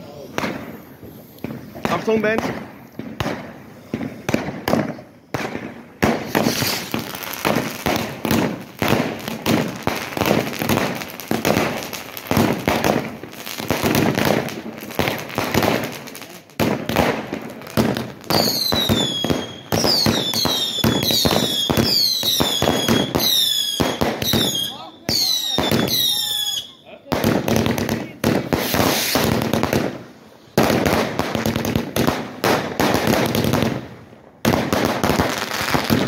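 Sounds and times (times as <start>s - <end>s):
whistling fireworks: 0.0s - 36.0s
firecracker bangs: 1.4s - 26.2s, 27.1s - 30.0s.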